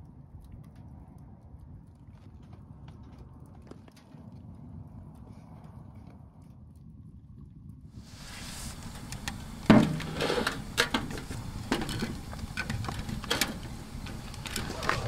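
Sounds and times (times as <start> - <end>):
steady hiss: 8.0 - 15.0
wood and metal knocks: 9.7 - 10.2.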